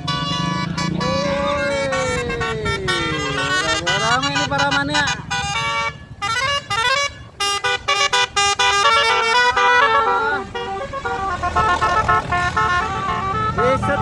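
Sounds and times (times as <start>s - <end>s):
low rumble of bus: 0.0s - 14.0s
multi-note melodic bus horn: 0.0s - 14.0s.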